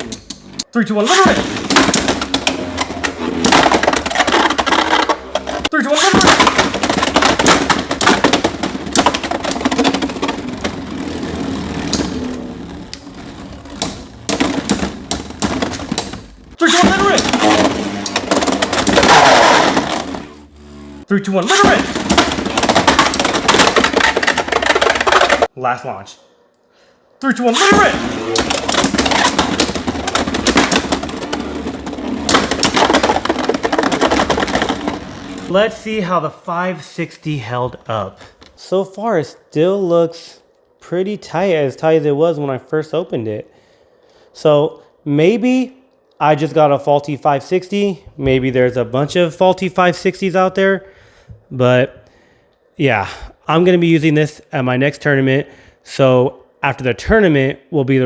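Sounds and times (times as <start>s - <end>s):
spinning tops clattering: 1.2s - 20.4s.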